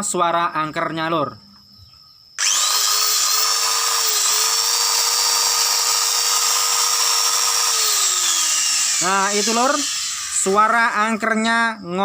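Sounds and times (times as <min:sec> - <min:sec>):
electric grinder running: 0:02.4 - 0:10.8.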